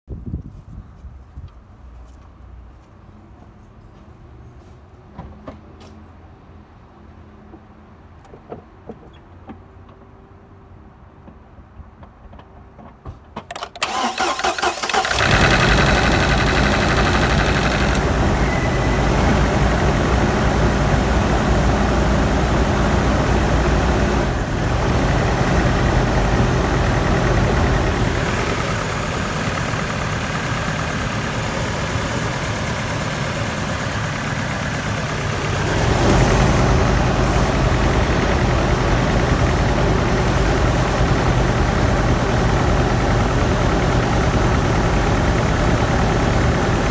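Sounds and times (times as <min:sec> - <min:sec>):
engine cranking and catching: 0:13.5 - 0:46.9
engine idling with misfire: 0:13.8 - 0:46.9.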